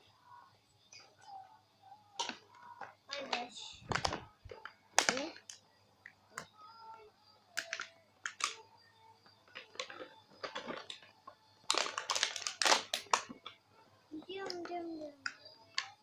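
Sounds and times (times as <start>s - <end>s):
plastic packaging crinkling: 9.5s - 11.1s, 11.7s - 13.5s.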